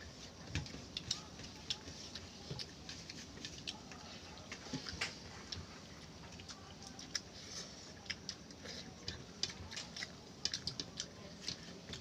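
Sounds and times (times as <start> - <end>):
food being chewed: 0.0 - 12.0.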